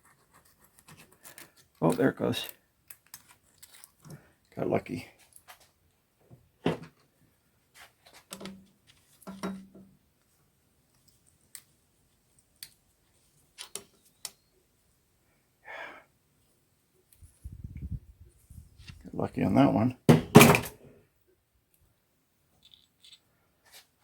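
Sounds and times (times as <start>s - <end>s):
tools and metal parts clicking: 22.6s - 23.2s.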